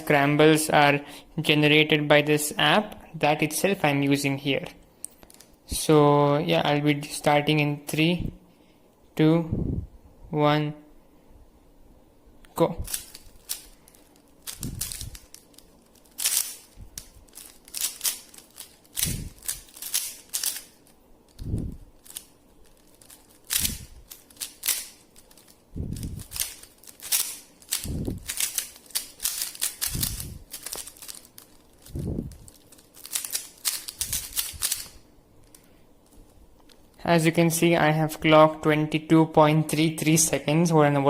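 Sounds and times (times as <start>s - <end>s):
puzzle cube clicking: 12.8s - 35.6s.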